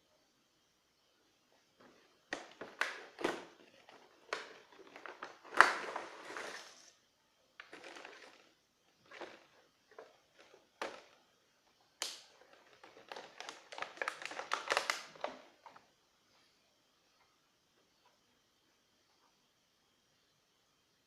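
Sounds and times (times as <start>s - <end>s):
crinkly rustling: 1.8s - 6.9s, 7.6s - 11.2s, 12.2s - 15.8s.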